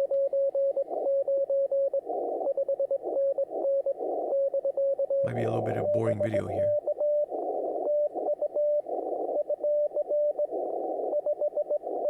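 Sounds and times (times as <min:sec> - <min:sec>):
hissing radio band noise: 0:05.3 - 0:06.8
morse code tone: 0:05.3 - 0:06.8.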